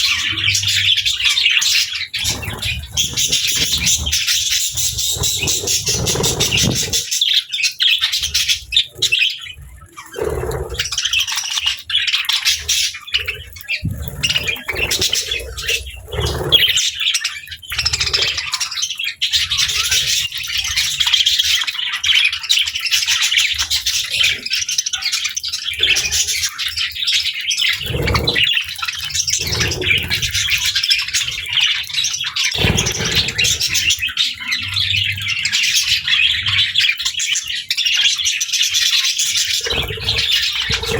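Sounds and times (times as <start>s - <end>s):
birds chirping and chattering: 0.0s - 40.9s
bird squawks: 27.6s - 40.9s.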